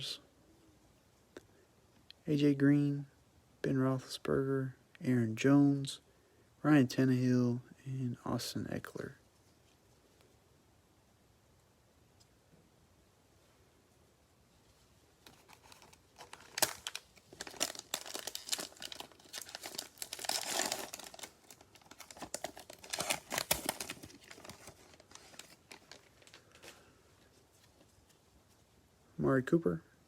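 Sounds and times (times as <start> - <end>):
cellophane crinkling and tearing: 15.2 - 28.0.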